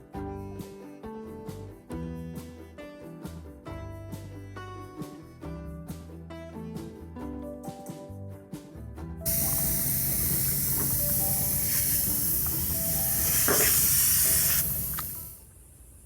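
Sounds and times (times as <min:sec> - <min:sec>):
paint spray gun hissing: 0:09.3 - 0:16.0.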